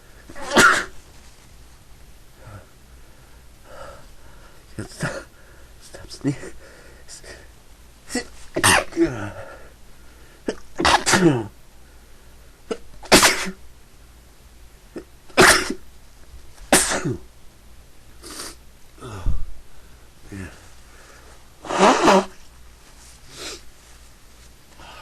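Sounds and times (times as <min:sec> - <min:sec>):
person sneezing: 0:00.3 - 0:01.0, 0:04.8 - 0:05.3, 0:08.1 - 0:09.6, 0:10.4 - 0:11.5, 0:12.7 - 0:13.6, 0:15.0 - 0:15.8, 0:16.7 - 0:17.3, 0:18.2 - 0:19.4, 0:21.6 - 0:22.4.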